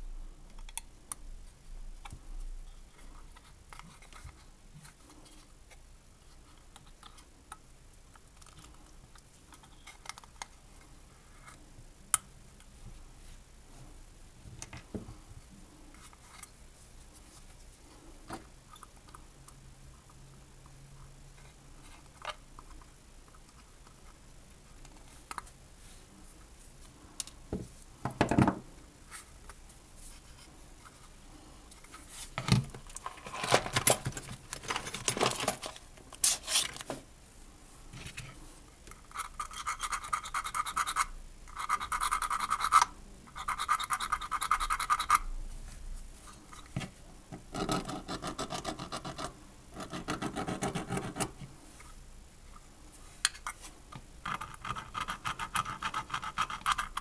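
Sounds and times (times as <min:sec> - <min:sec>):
hand scraping small parts: 0:31.7 - 0:36.9.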